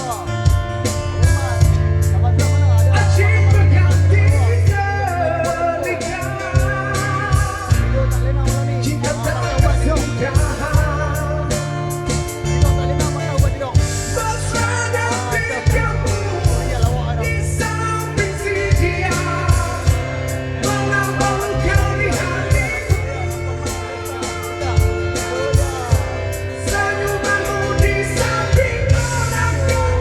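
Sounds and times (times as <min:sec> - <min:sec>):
man singing rock ballad: 0:00.0 - 0:30.0
rock band backing music: 0:00.0 - 0:30.0.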